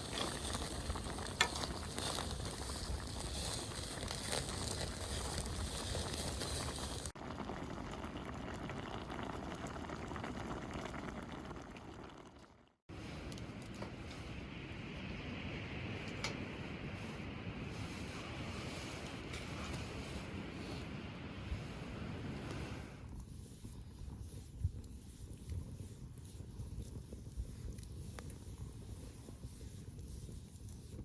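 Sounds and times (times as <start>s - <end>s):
food sizzling and bubbling: 0.0s - 12.8s.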